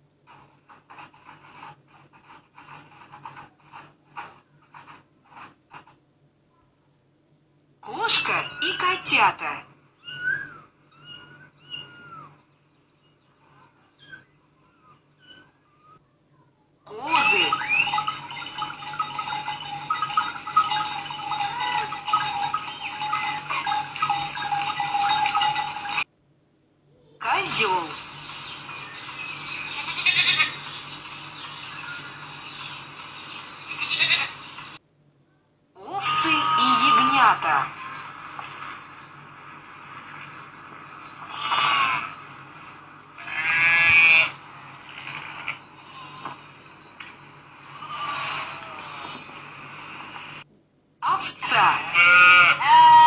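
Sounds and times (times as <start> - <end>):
goats bleating: 29.8 - 30.6, 33.7 - 34.3, 36.2 - 37.1, 41.3 - 42.2, 43.2 - 44.4, 51.9 - 53.0.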